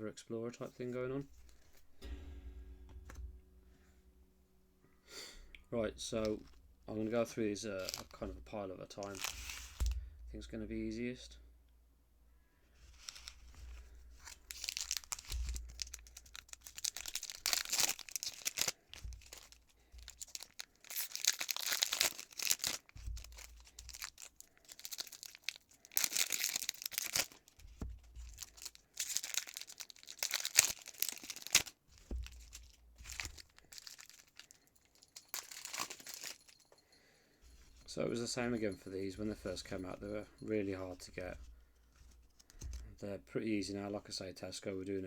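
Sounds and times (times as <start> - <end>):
foil wrappers tearing and crinkling: 7.7 - 10.0, 12.9 - 36.6.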